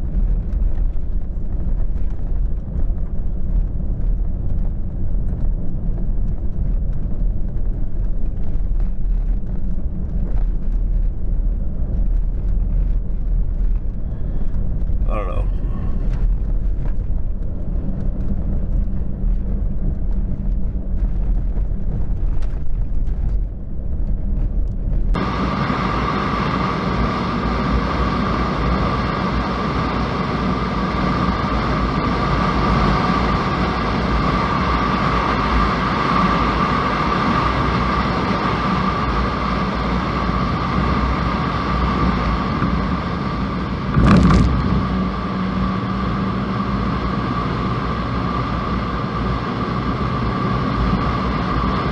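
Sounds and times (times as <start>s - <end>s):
road and wind hiss: 0.0s - 51.9s
steady whine: 0.0s - 51.9s
vehicle engine and road rumble: 0.0s - 51.9s
vehicle jolt: 42.4s - 46.6s.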